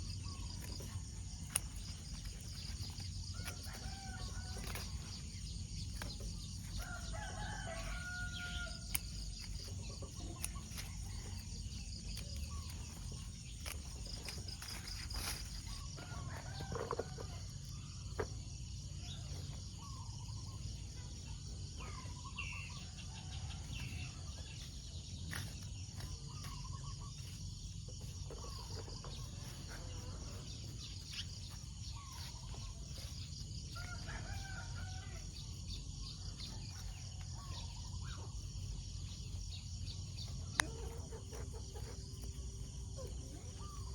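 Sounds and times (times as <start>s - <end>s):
chickens clucking: 40.3s - 43.9s.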